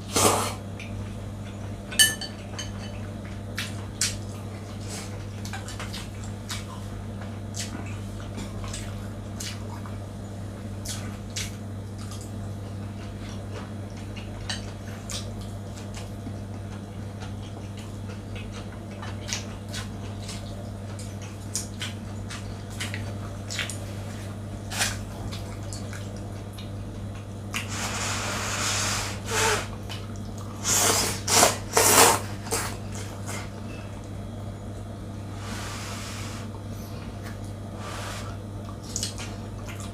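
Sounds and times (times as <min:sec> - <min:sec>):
steady low hum: 0:00.0 - 0:39.9
chewing: 0:10.8 - 0:23.9, 0:38.6 - 0:39.9
slurping noodles: 0:27.6 - 0:29.7, 0:30.6 - 0:32.8.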